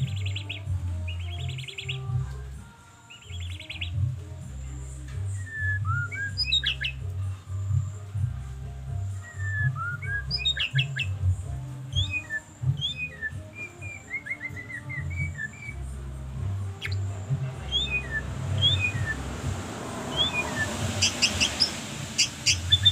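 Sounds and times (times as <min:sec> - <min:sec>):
bird singing whistled notes: 0:00.0 - 0:02.4, 0:03.1 - 0:04.1, 0:05.2 - 0:08.1, 0:09.1 - 0:15.9, 0:16.7 - 0:19.4, 0:20.0 - 0:22.9
low hum: 0:15.2 - 0:22.9.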